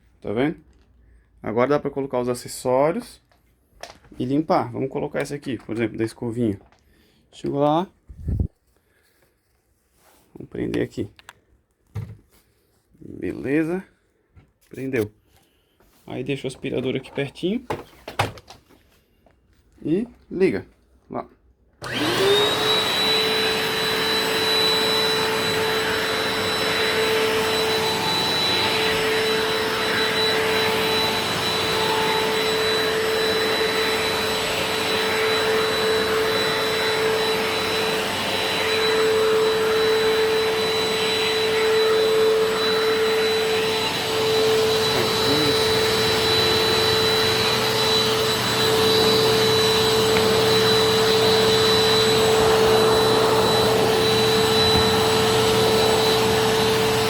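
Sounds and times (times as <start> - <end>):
vacuum cleaner running: 21.8 - 57.0.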